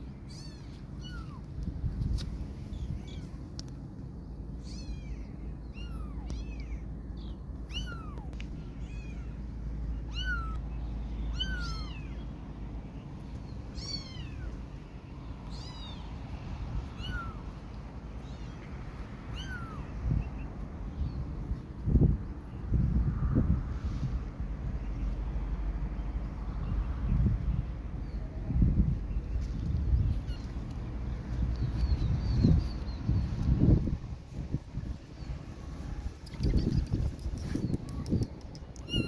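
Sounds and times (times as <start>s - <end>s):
low background rumble: 0.0s - 39.0s
kitten meowing: 0.3s - 1.5s, 4.6s - 6.9s, 7.7s - 9.4s, 10.1s - 10.6s, 11.3s - 12.2s, 13.8s - 14.6s, 15.5s - 16.0s, 16.9s - 17.4s, 19.3s - 19.9s, 30.1s - 30.6s, 37.4s - 39.0s.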